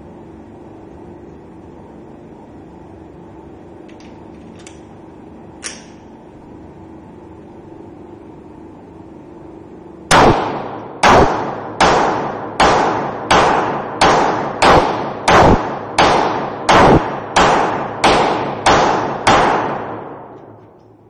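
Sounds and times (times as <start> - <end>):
pistol shots: 10.1 - 20.4.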